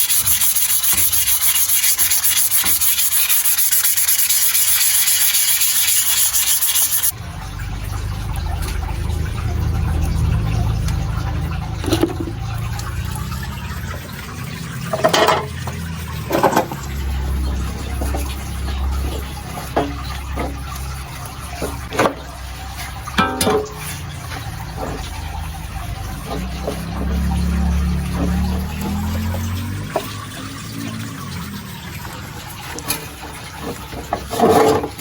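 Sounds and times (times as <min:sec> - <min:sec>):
sanding metal scratching: 0:00.0 - 0:07.2, 0:15.8 - 0:31.7
low rumble: 0:07.2 - 0:14.8.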